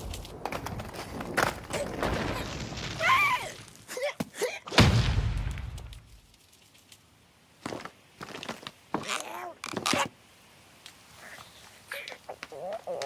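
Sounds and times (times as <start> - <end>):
loud crash with deep rumble: 4.8 - 5.9.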